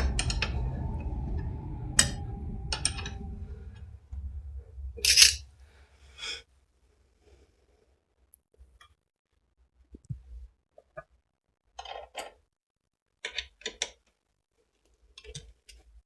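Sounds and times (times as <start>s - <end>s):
low rumble: 0.0s - 5.4s
metal scraping: 5.0s - 5.4s.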